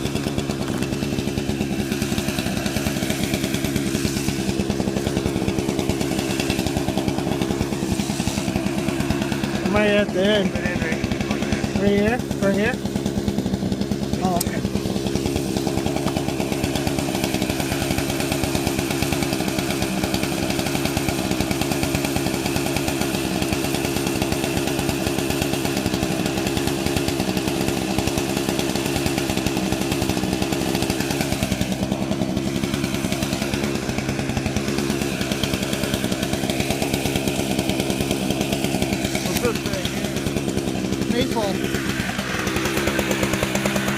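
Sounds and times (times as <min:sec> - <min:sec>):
chainsaw cutting a log: 0:00.0 - 0:43.9.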